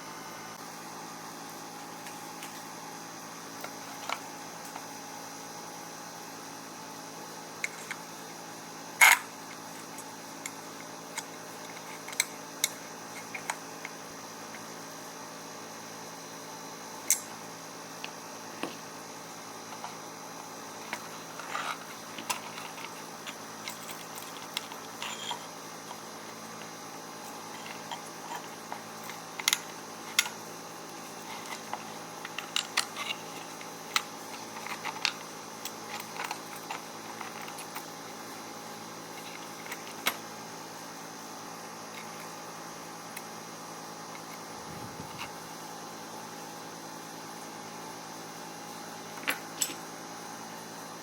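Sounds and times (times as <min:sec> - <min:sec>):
steady background hum: 0:00.0 - 0:51.0.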